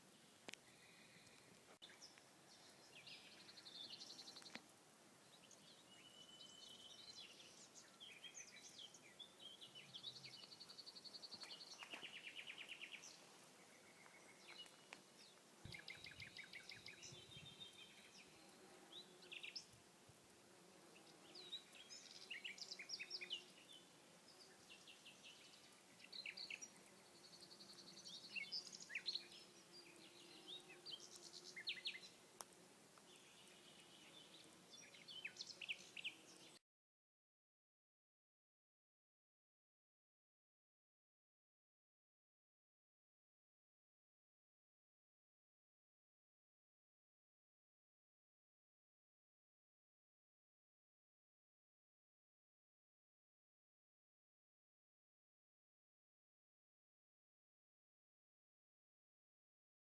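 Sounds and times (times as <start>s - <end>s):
songbirds singing: 0.0s - 19.8s, 20.6s - 36.6s.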